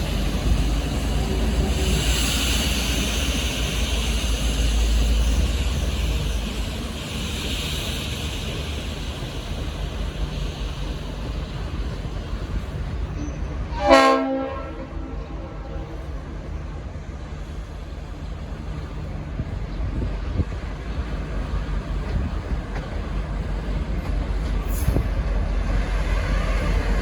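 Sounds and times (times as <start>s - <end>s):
diesel locomotive running: 0.0s - 27.0s
air horn blast: 13.7s - 15.8s.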